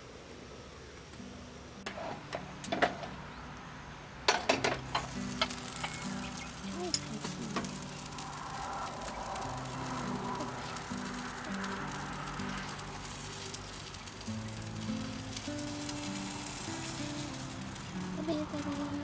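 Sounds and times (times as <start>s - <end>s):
background music with low notes: 1.2s - 19.0s
food sizzling in a pan: 4.7s - 19.0s.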